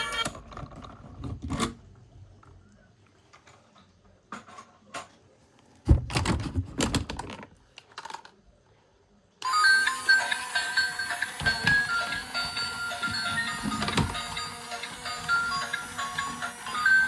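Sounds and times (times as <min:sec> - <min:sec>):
plastic toys clicking and knocking: 0:06.0 - 0:08.4, 0:09.4 - 0:17.0.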